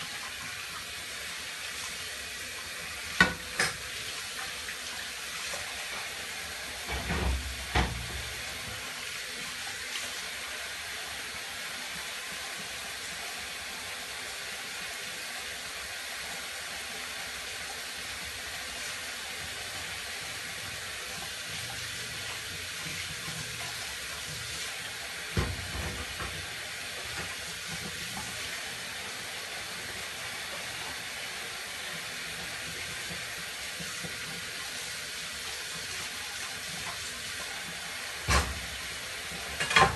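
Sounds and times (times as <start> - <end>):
tap running into a sink: 0.0 - 10.4, 17.5 - 29.5, 31.8 - 39.9
dishes knocking: 3.2 - 3.8.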